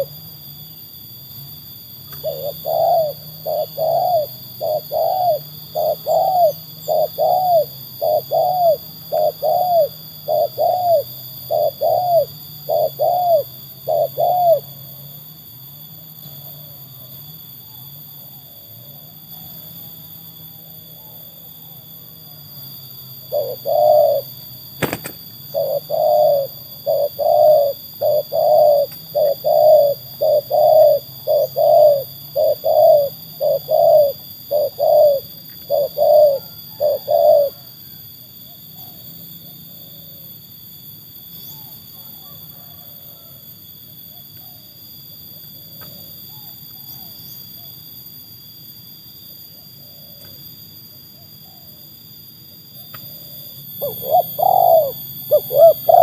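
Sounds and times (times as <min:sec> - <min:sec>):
dove cooing: 0:02.0 - 0:14.8, 0:23.2 - 0:38.0, 0:41.5 - 0:43.4, 0:53.1 - 0:56.0
faint bird calls: 0:02.1 - 0:14.9, 0:23.2 - 0:39.0, 0:52.8 - 0:56.0.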